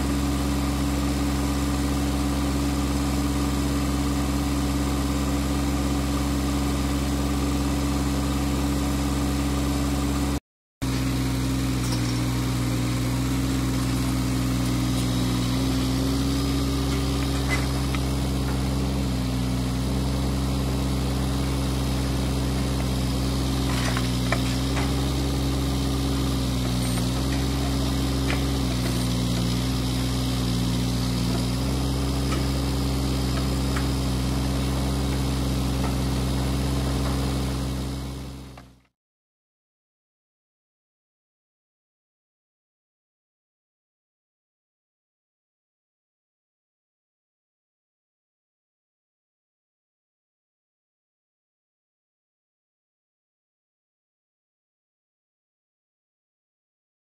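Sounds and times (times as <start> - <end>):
diesel engine idling: 0.0 - 38.8.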